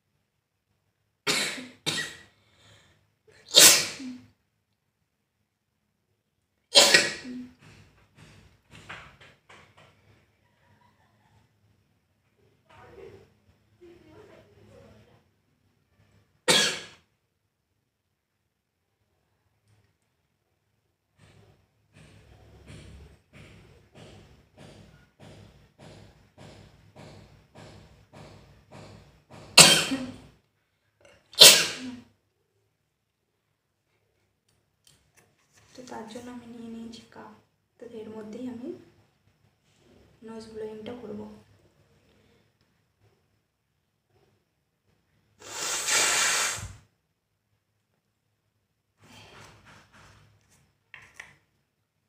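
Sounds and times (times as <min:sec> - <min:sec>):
person sneezing: 0:01.3 - 0:02.4, 0:03.3 - 0:04.4, 0:06.7 - 0:07.7, 0:16.5 - 0:17.0, 0:29.6 - 0:30.2, 0:31.3 - 0:32.1, 0:45.4 - 0:46.8
person blowing nose: 0:03.5 - 0:04.2, 0:31.4 - 0:32.0, 0:45.4 - 0:46.9.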